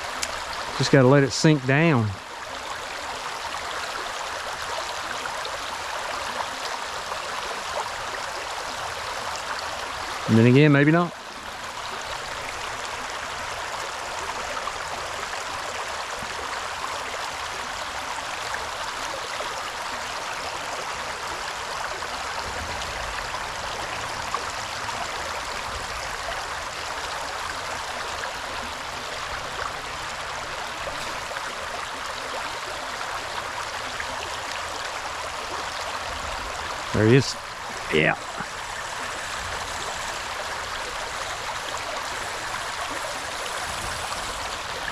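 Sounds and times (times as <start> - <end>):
river water rushing: 0.0 - 44.9.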